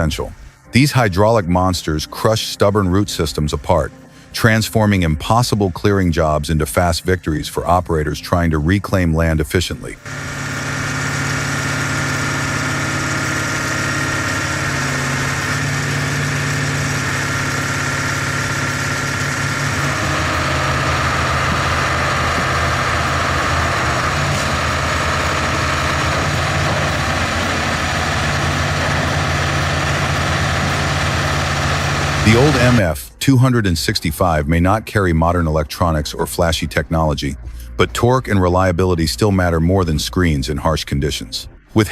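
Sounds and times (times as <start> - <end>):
heavy machine engine droning: 9.9 - 33.1
high whine: 10.0 - 33.0.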